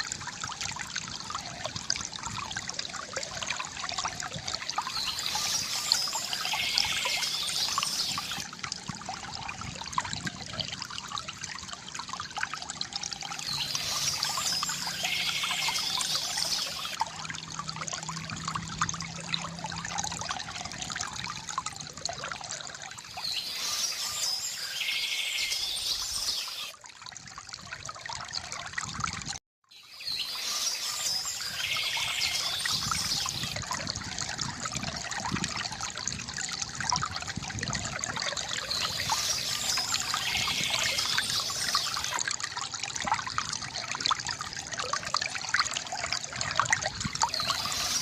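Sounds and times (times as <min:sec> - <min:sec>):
water pouring into basin: 0:00.0 - 0:29.4, 0:30.0 - 0:48.0
bird singing with buzzy trill: 0:04.9 - 0:08.4, 0:13.4 - 0:17.0, 0:23.2 - 0:26.7, 0:29.8 - 0:33.5, 0:38.6 - 0:42.2, 0:47.3 - 0:48.0.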